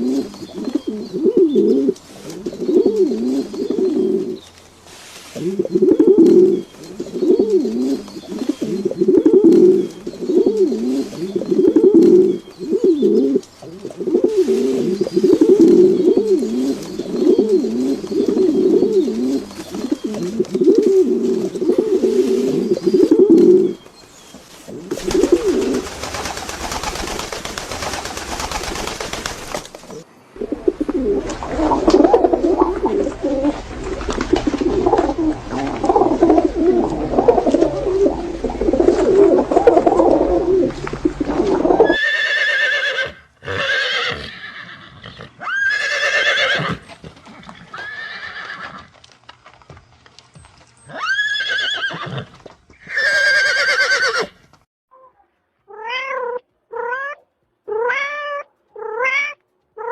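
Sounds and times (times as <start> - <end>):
low busy animal calling: 0.0 - 26.0, 30.4 - 46.8
animal hissing: 4.8 - 6.0.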